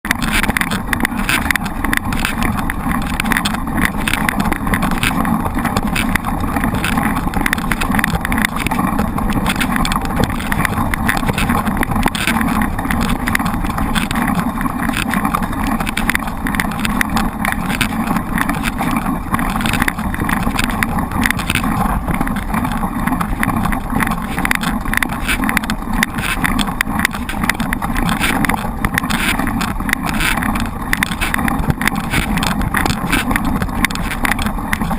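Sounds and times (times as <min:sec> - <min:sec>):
bike rattles and clicks: 0:00.0 - 0:34.9.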